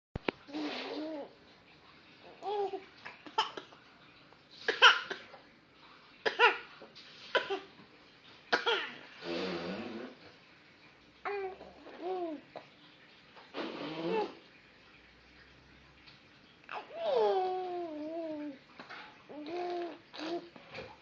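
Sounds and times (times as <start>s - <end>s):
baby coughing: 3.3s - 3.8s, 4.7s - 5.4s, 6.2s - 6.7s, 7.3s - 7.7s, 8.5s - 9.0s.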